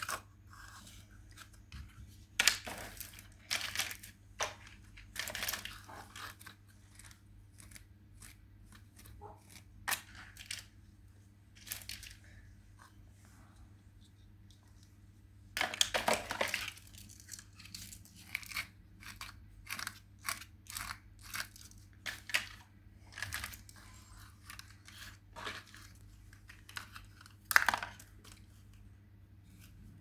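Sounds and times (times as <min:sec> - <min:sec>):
crunching and crinkling handling: 0:11.5 - 0:13.0.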